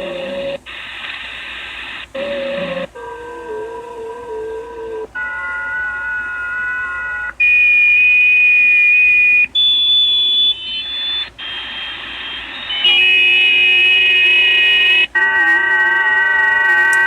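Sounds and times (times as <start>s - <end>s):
steady electronic radio tones: 0.0s - 17.0s.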